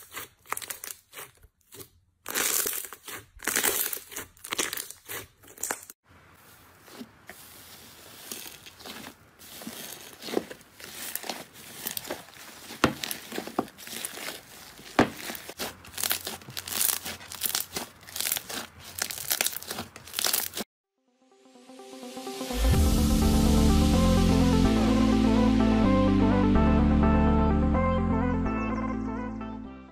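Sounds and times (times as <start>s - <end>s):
slime crackling and popping: 0.1s - 6.0s, 8.0s - 20.6s.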